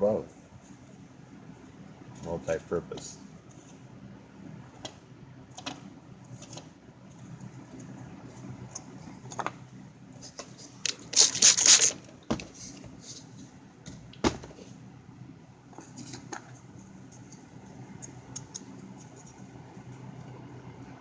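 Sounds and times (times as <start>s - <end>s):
loud rustling scrape: 10.9s - 12.0s.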